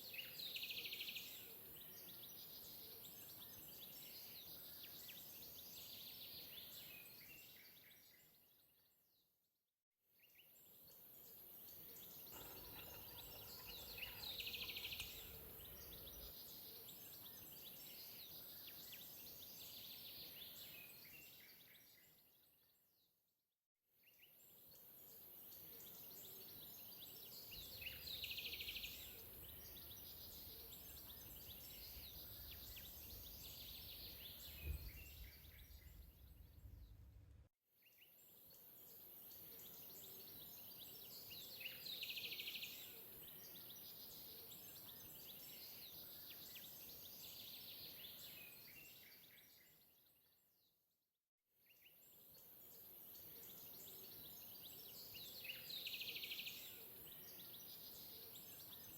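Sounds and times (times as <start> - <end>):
birds chirping: 12.4 - 16.7.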